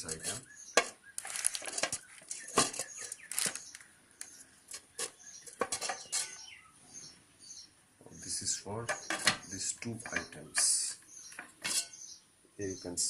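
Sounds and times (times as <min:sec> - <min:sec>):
cookware and glass lid clinking: 0:08.9 - 0:10.7, 0:11.6 - 0:11.9.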